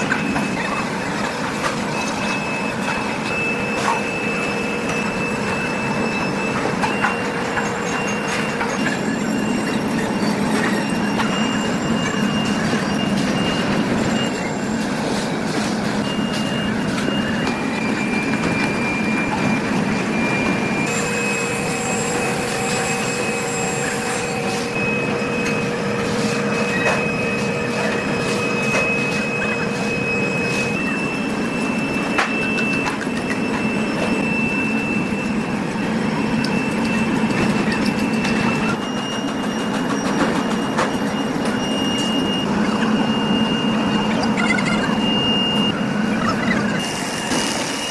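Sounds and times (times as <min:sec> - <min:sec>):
factory machinery rumble: 0:00.0 - 0:47.9
thin high whine: 0:20.6 - 0:37.4.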